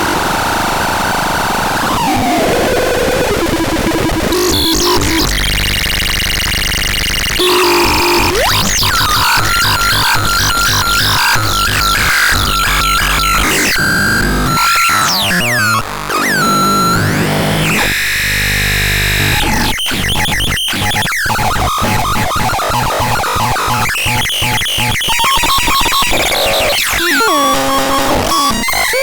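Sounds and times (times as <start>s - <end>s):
synthesizer tones: 2.0s - 10.8s.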